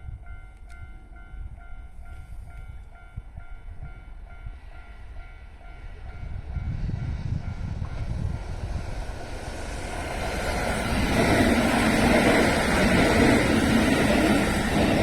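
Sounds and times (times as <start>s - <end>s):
electric train rumbling past: 0.0s - 15.0s.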